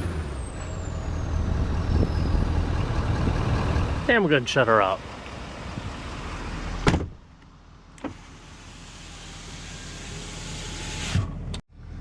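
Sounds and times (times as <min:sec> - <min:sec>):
diesel engine shutting off: 0:00.0 - 0:06.8.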